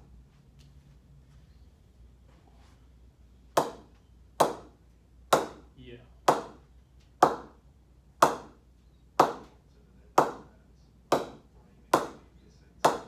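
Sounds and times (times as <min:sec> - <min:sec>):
cricket ball knocking on bat: 0:07.2 - 0:07.6.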